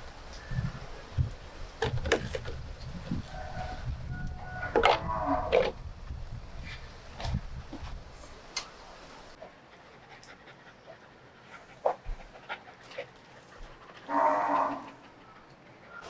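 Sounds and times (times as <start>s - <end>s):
animal call: 3.2s - 5.8s, 14.0s - 16.0s.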